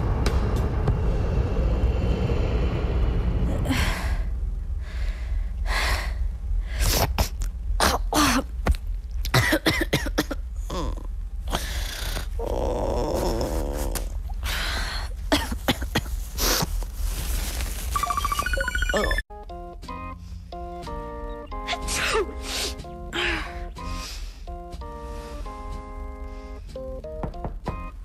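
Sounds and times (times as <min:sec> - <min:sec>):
steady low rumble: 0:00.0 - 0:17.8.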